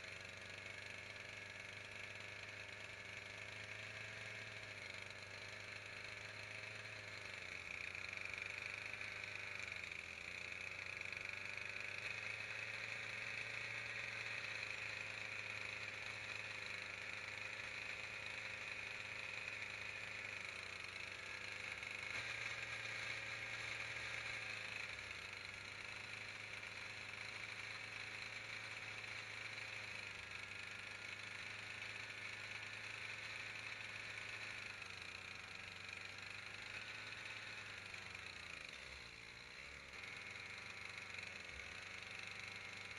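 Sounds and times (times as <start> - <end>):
small electric motor humming: 0.0 - 42.9.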